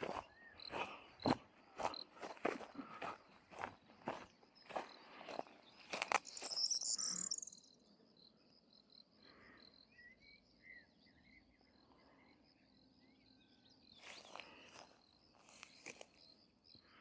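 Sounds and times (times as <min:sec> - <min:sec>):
crickets trilling: 0:00.0 - 0:17.0
faint bird chirps: 0:00.0 - 0:17.0
rapid high chirping: 0:06.2 - 0:07.6.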